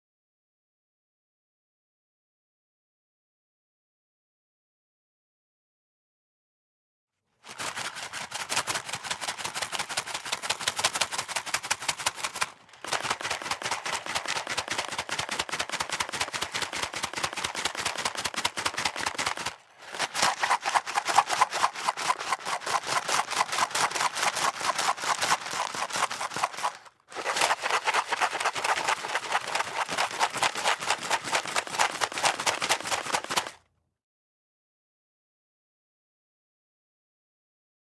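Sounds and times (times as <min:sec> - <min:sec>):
dry spaghetti rattling in a box: 0:07.5 - 0:33.6.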